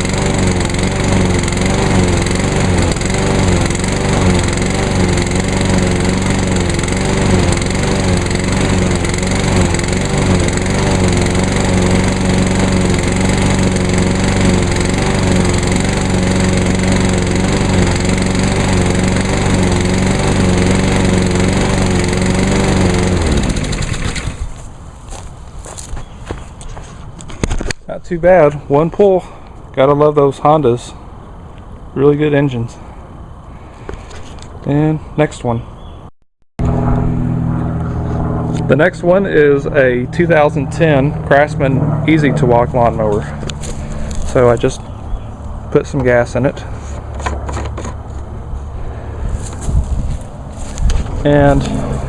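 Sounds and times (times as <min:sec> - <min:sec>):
engine spinning down: 0:00.0 - 0:24.7, 0:36.6 - 0:52.0
lawn mower engine running: 0:00.0 - 0:27.7, 0:36.6 - 0:52.0.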